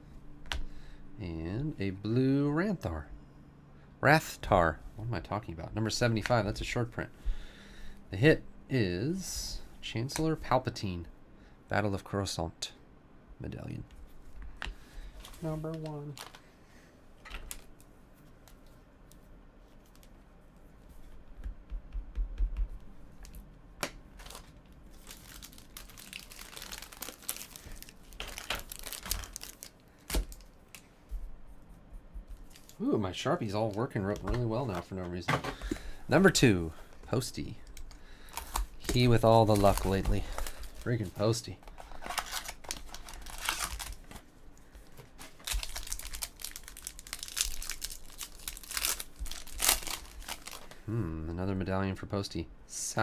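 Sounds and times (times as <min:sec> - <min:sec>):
packaging crinkling and tearing: 0:15.2 - 0:16.4, 0:24.1 - 0:30.9, 0:37.6 - 0:50.9.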